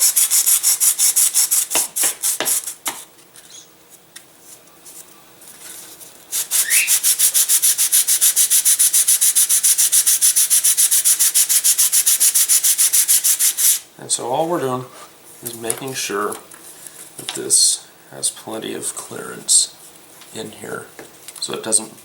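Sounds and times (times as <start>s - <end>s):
sandpaper rubbing wood: 0.0s - 3.0s, 6.3s - 13.8s.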